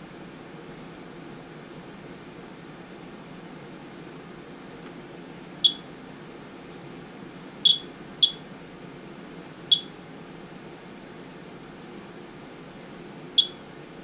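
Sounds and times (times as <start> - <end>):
geiger counter beeps: 5.6 - 5.8, 7.7 - 8.4, 9.7 - 9.9, 13.4 - 13.6.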